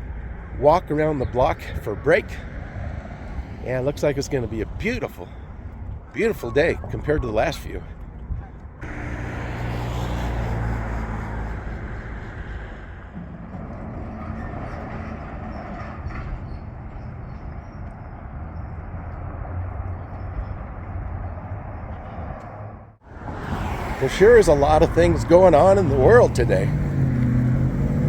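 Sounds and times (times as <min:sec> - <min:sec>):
vehicle engine passing by: 0:08.8 - 0:17.0, 0:18.0 - 0:28.0.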